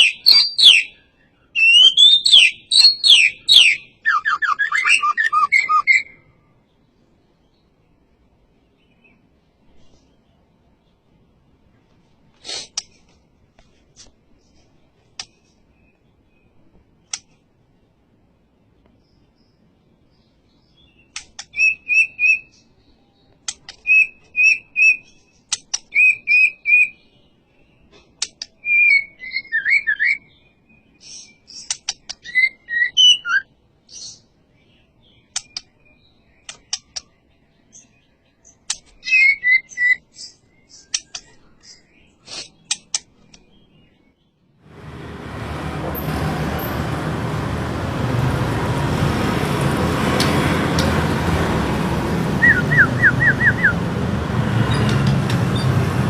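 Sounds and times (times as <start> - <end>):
songbird whistling song: 0.0 - 6.4, 20.2 - 44.4, 52.4 - 53.8
bird clicks: 15.2 - 15.4, 21.1 - 21.6, 36.4 - 37.1.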